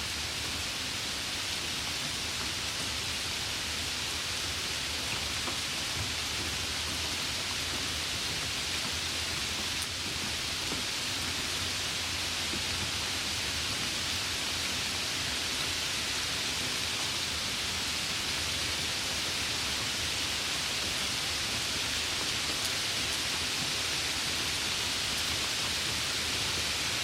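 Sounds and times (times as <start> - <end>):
light rain falling: 0.0 - 27.0.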